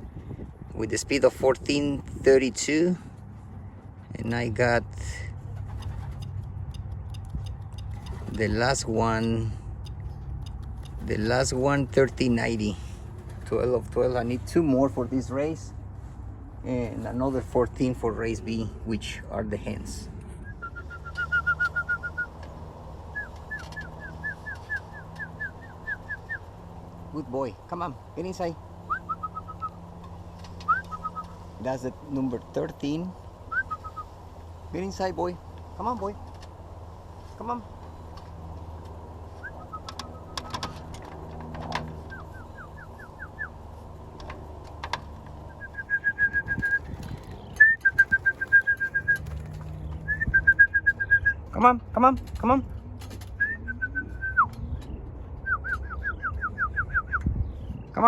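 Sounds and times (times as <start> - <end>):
steady low hum: 0.0 - 55.6
small bird whistling: 20.4 - 22.4, 23.1 - 26.4, 28.9 - 29.8, 30.6 - 31.4, 33.5 - 34.1, 39.4 - 40.5, 42.1 - 43.6, 45.5 - 49.4, 50.0 - 51.4, 55.4 - 57.6
short rising bird chirps: 30.6 - 31.5, 33.5 - 34.1, 39.3 - 40.6
rapid high bird trill: 42.0 - 43.6.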